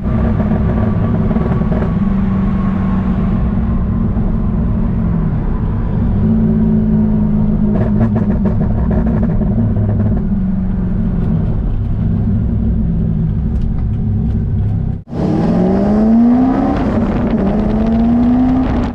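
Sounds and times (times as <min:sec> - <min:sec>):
car engine accelerating: 0:00.0 - 0:18.9.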